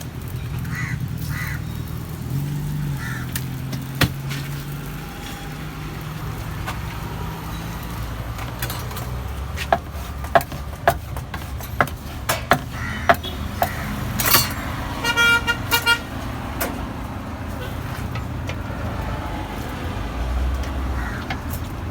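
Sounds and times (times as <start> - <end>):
street traffic hum: 0.0 - 21.9
sharp knocks: 9.6 - 13.9.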